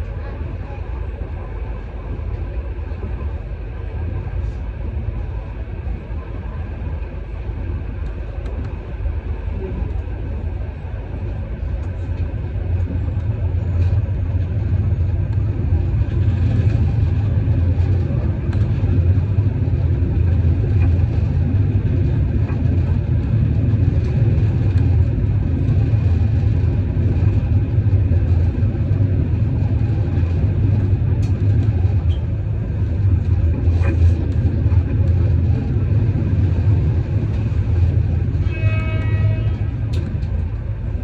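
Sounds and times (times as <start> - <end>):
vehicle rumble: 8.4 - 41.0
short pitched toot: 38.4 - 39.7.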